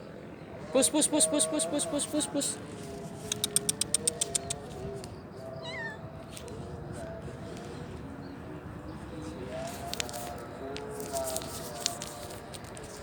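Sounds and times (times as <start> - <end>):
person making clicking calls: 3.2 - 5.1
cat meowing: 5.5 - 6.1.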